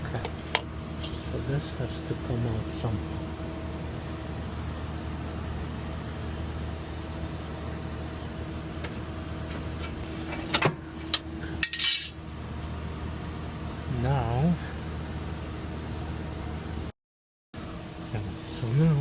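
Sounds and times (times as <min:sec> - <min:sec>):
refrigerator compressor humming: 0:00.0 - 0:16.9, 0:17.6 - 0:19.0.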